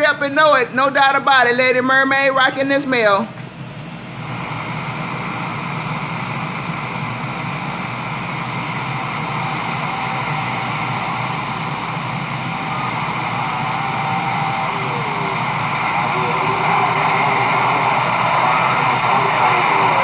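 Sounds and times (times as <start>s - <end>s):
radio static hiss: 4.3s - 20.0s
faint thin radio whistles: 8.0s - 20.0s.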